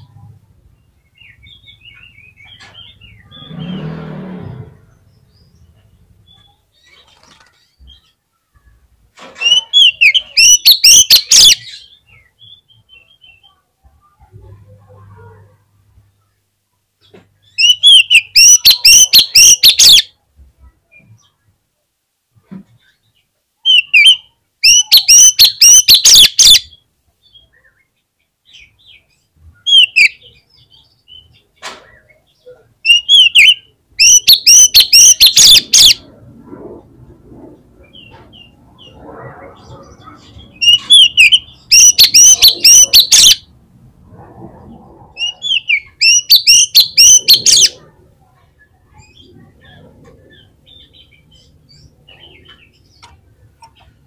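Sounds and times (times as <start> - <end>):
magpie-robin singing whistled notes: 9.4 - 13.4, 17.4 - 20.1, 23.6 - 27.9, 29.7 - 30.2, 32.8 - 36.0, 40.5 - 43.4, 45.2 - 47.8.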